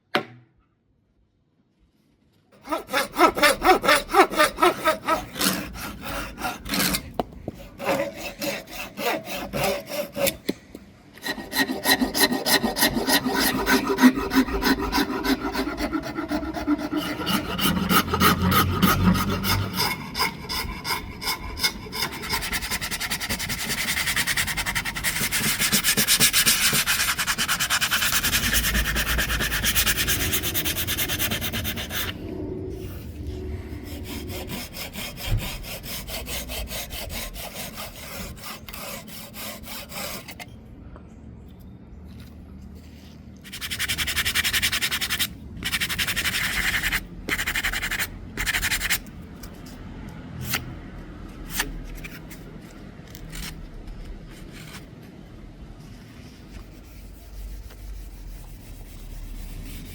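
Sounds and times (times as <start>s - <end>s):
rasp rubbing on wood: 2.6s - 10.4s, 11.2s - 32.1s, 33.8s - 40.4s.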